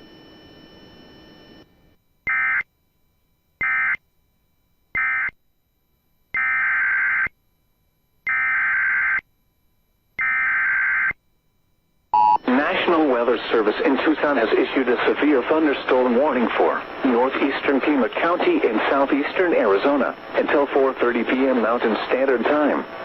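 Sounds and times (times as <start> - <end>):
digital data bursts: 12.2 - 23.0.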